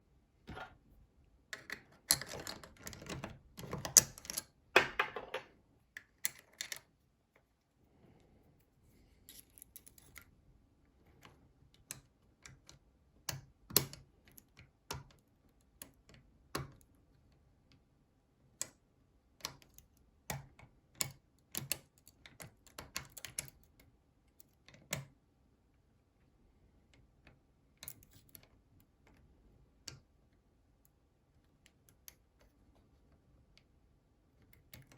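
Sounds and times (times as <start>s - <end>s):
metallic lock clicks and scrapes: 1.6s - 4.5s, 9.2s - 10.2s.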